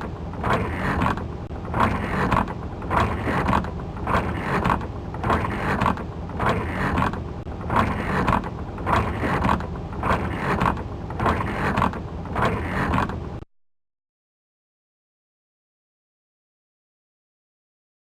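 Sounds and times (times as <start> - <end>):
windshield wipers swishing: 0.0 - 13.4
car low rumble: 0.0 - 13.5.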